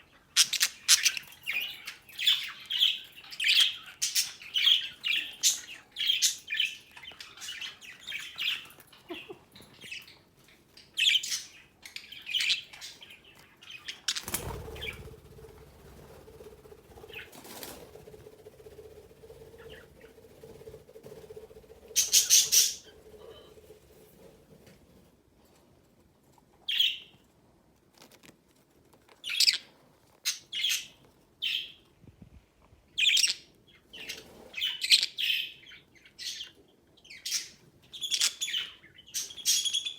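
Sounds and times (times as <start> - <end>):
budgerigars chirping: 0.2 - 10.2, 10.8 - 15.1, 22.0 - 23.5, 33.0 - 39.9.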